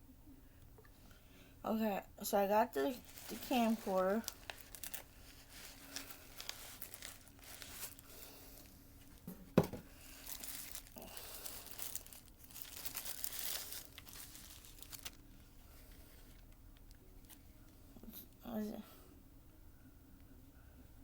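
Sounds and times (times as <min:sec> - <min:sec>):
plastic crinkling and rustling: 0:02.6 - 0:17.7.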